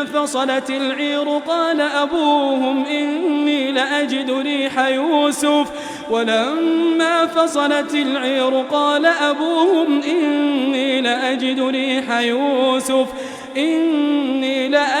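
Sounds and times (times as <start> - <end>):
man chanting recitation: 0.0 - 15.0
breath: 5.7 - 6.1, 13.1 - 13.6.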